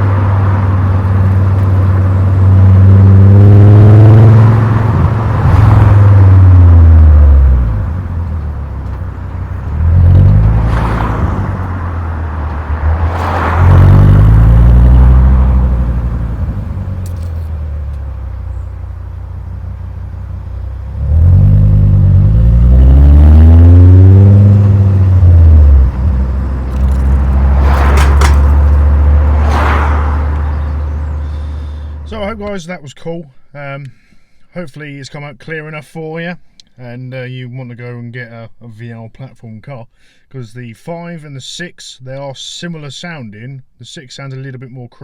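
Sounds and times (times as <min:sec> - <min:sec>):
car engine revving: 0:00.0 - 0:32.2.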